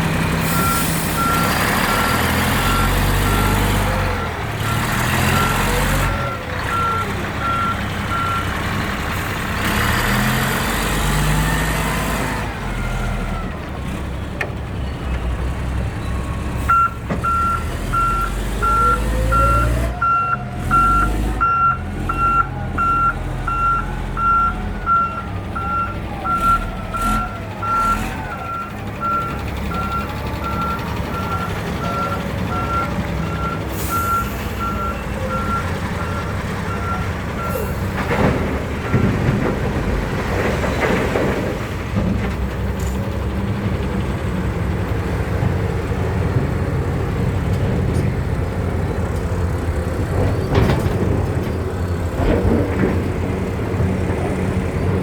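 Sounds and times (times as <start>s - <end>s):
heavy diesel machinery running: 0.0s - 55.0s
reversing alarm beeping: 16.7s - 37.8s.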